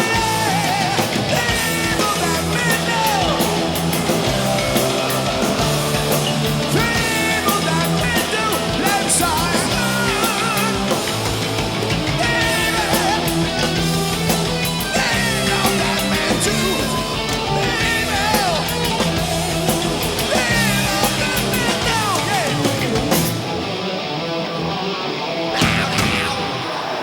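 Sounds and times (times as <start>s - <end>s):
person singing: 0.0s - 14.1s, 14.8s - 23.2s, 25.5s - 26.9s
rock music with distorted guitar: 0.0s - 27.0s.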